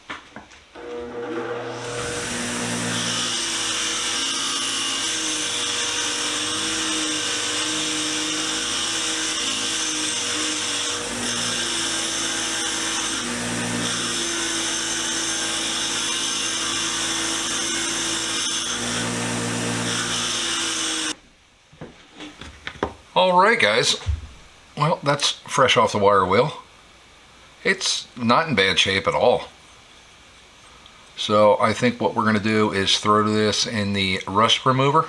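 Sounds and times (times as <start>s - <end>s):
wire wheel motor hum: 0.8s - 4.1s.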